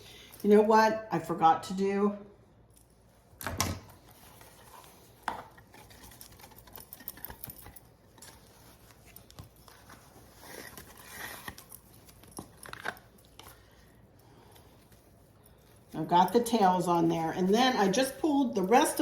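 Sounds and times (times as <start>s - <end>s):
ribbon rustling and crinkling: 3.9s - 19.0s.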